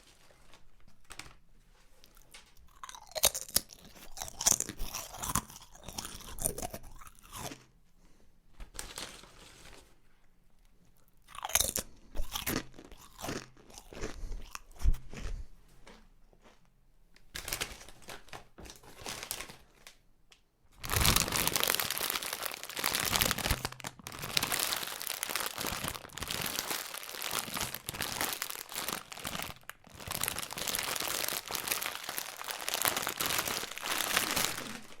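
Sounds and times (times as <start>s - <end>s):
chip packet crinkling: 0.1s - 7.6s, 17.4s - 20.0s, 20.8s - 35.0s.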